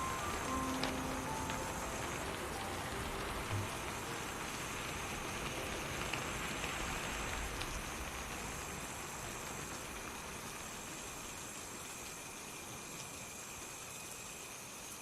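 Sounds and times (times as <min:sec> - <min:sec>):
steady rain hiss: 0:00.0 - 0:15.0.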